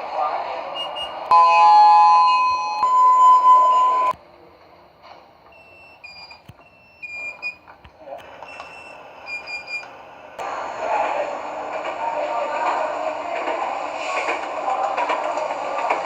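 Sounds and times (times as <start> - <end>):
elevator two-note chime: 1.3 - 4.1.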